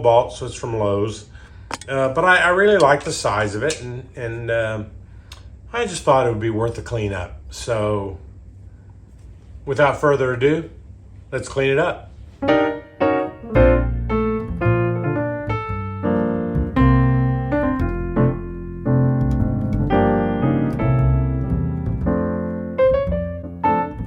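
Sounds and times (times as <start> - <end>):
piano playing: 12.4 - 24.0.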